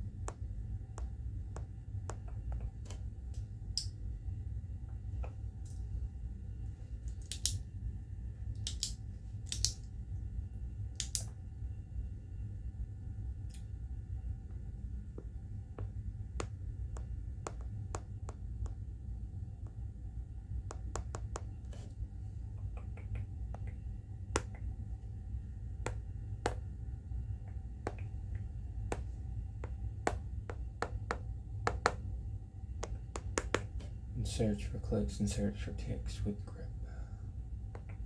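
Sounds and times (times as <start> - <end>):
low steady hum: 0.0 - 38.0
sharp clicks and ticks: 32.8 - 33.9.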